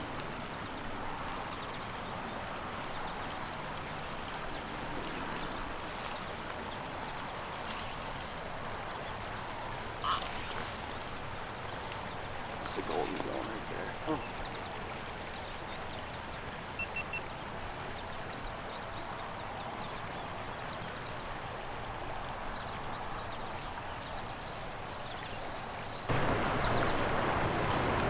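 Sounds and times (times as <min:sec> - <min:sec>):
stream rushing: 0:01.0 - 0:14.4, 0:26.1 - 0:28.0
steady high whine: 0:26.1 - 0:28.0.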